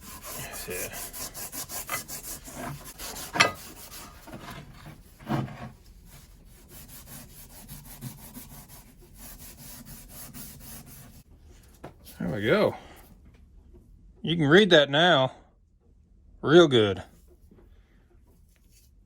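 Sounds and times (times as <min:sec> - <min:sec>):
pad scrubbing rusty steel: 0:00.0 - 0:11.2
sharp metal clank: 0:03.3 - 0:03.7.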